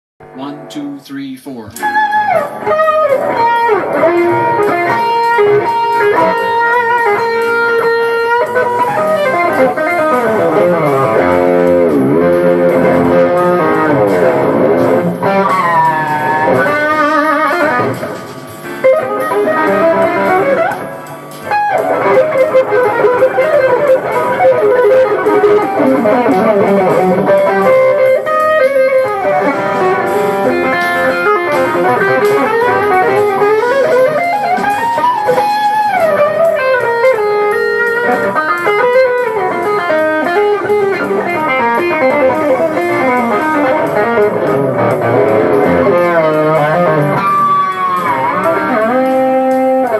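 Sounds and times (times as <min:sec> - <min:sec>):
electric guitar jazz fusion: 0:01.7 - 0:49.9.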